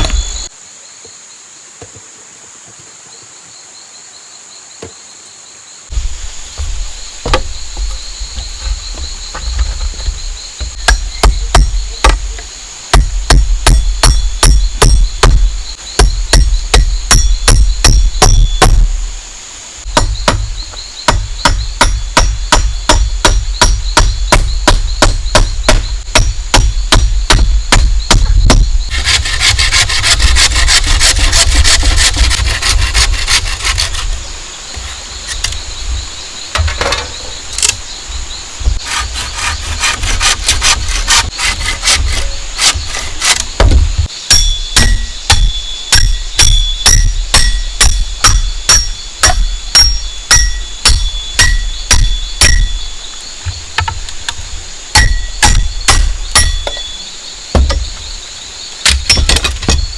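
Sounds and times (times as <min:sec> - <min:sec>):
hand tool strokes on bamboo: 0:28.9 - 0:36.1, 0:38.6 - 0:43.6
rapid scraping: 0:28.9 - 0:36.1, 0:38.6 - 0:43.6.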